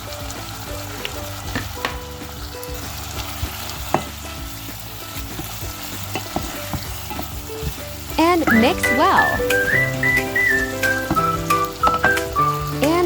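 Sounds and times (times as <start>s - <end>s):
food sizzling in a pan: 0.0s - 13.0s
utensil knocking against pan: 1.4s - 2.1s, 3.4s - 4.2s, 5.2s - 9.8s, 10.9s - 12.6s.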